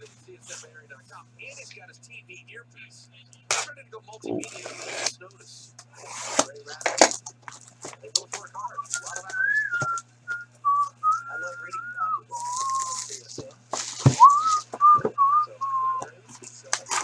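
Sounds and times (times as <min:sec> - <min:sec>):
person whistling a tune: 0:08.7 - 0:13.0, 0:14.2 - 0:16.1.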